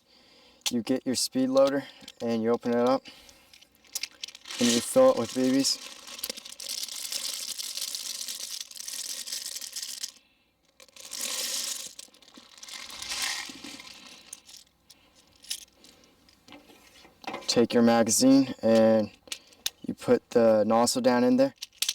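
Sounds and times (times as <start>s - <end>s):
plastic pellets pouring: 4.3s - 10.2s, 10.8s - 14.5s.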